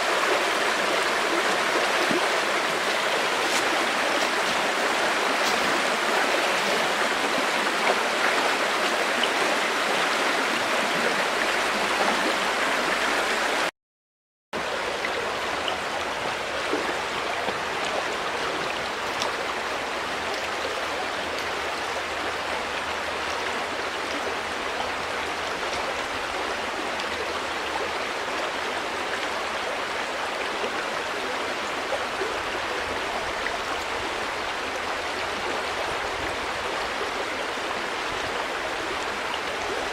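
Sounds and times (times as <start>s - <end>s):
river water flowing: 0.0s - 13.7s, 14.6s - 39.9s.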